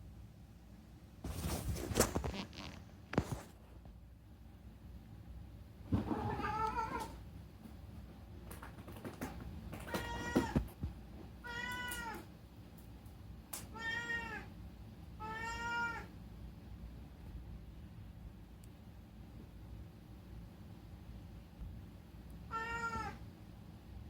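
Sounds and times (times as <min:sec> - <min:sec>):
cat meowing: 0:06.1 - 0:07.2, 0:09.9 - 0:10.6, 0:11.4 - 0:12.3, 0:13.7 - 0:14.5, 0:15.2 - 0:16.1, 0:22.5 - 0:23.2.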